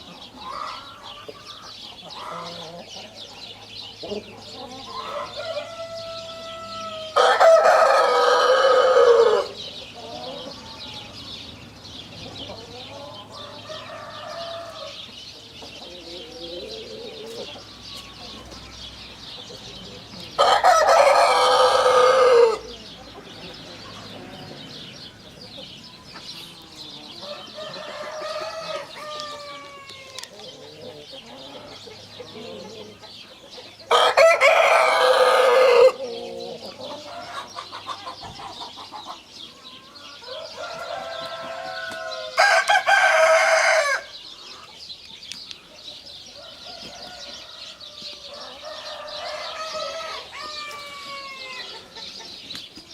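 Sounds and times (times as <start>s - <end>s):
chickens clucking: 0.0s - 52.9s
rooster crowing: 4.9s - 9.6s, 20.4s - 22.8s, 27.1s - 30.3s, 33.9s - 36.0s, 40.2s - 44.2s, 46.4s - 52.0s.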